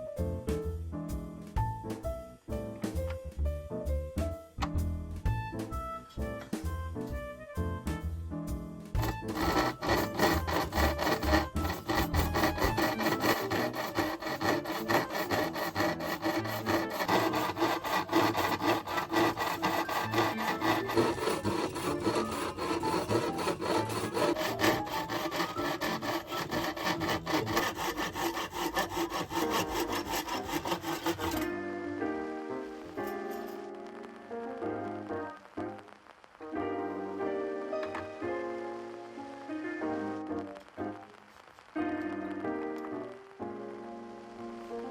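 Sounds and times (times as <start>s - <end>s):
hand saw cutting wood: 9.0s - 31.6s, 33.0s - 33.6s.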